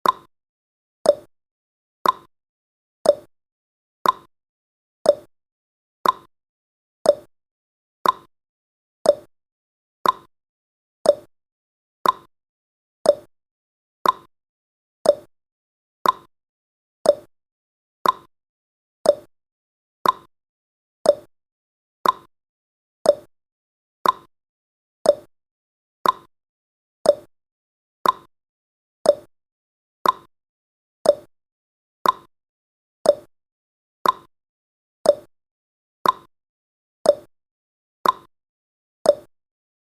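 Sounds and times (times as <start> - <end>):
clock-style timer ticks: 0.0 - 0.3, 1.1 - 1.3, 2.0 - 2.3, 3.0 - 3.3, 4.0 - 4.3, 5.0 - 5.3, 6.0 - 6.3, 7.1 - 7.3, 8.0 - 8.3, 9.0 - 9.3, 10.0 - 10.3, 11.0 - 11.3, 12.0 - 12.3, 13.0 - 13.3, 14.0 - 14.3, 15.0 - 15.3, 16.0 - 16.3, 17.0 - 17.3, 18.0 - 18.3, 19.0 - 19.3, 20.0 - 20.3, 21.0 - 21.3, 22.0 - 22.3, 23.0 - 23.3, 24.0 - 24.3, 25.0 - 25.3, 26.0 - 26.3, 27.0 - 27.3, 28.0 - 28.3, 29.0 - 29.3, 30.0 - 30.3, 31.0 - 31.3, 32.0 - 32.3, 33.0 - 33.3, 34.0 - 34.3, 35.0 - 35.3, 36.0 - 36.3, 37.0 - 37.3, 38.0 - 38.3, 39.1 - 39.3.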